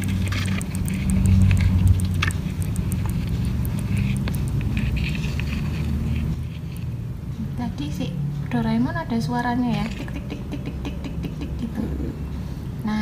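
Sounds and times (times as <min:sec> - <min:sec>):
hermit crab ticking clicks: 0:00.0 - 0:05.0.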